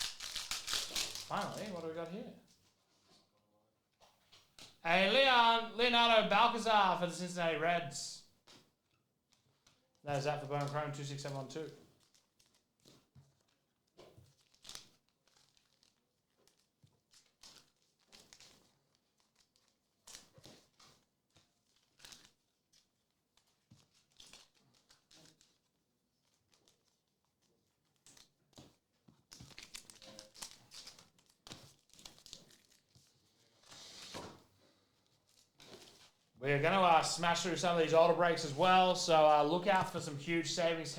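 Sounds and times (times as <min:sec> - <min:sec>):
cards and packaging crinkling: 0:00.0 - 0:02.2.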